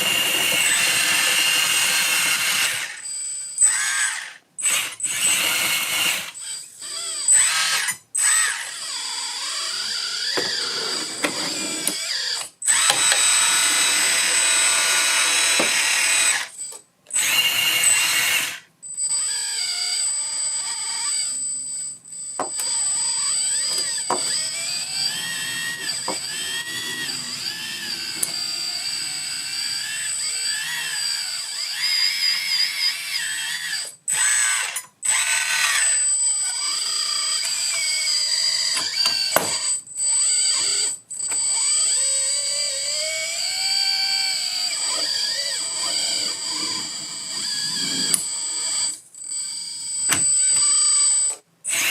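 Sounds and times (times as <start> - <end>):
hydraulic pump whining: 0.0 - 3.0, 7.2 - 16.5, 22.4 - 33.2, 40.4 - 51.1.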